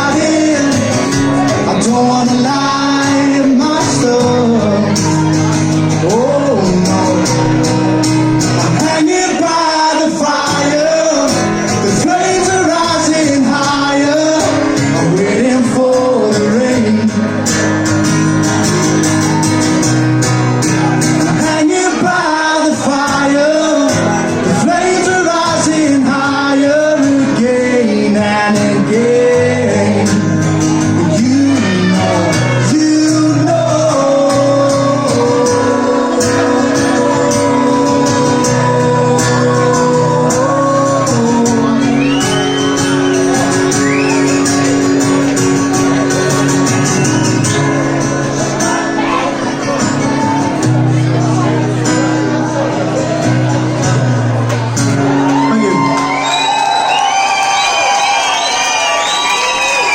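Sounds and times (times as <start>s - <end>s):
man singing: 0.0s - 17.9s, 21.2s - 46.5s
live rock band: 0.0s - 59.9s.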